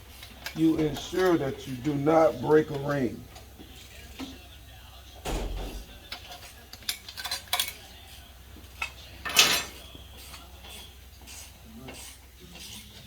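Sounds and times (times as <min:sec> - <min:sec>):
metal tools clinking: 0:00.2 - 0:03.5, 0:05.4 - 0:08.0, 0:08.6 - 0:10.8
metallic clatter: 0:05.3 - 0:07.8.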